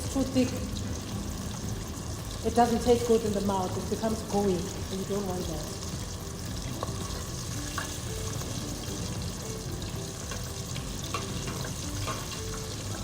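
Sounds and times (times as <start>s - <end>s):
hot oil popping: 0.0s - 13.0s
oil sizzling: 0.0s - 13.0s.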